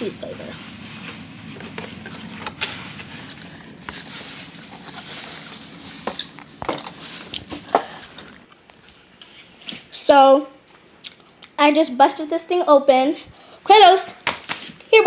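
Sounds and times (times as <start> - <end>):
packaging crinkling and rustling: 0.2 - 9.5.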